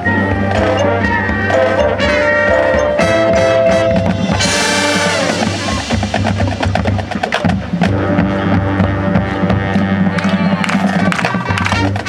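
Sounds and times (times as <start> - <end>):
sustained low brass notes: 0.0 - 12.0
rapid drum hits: 1.1 - 8.1
cymbal crash: 4.1 - 7.4.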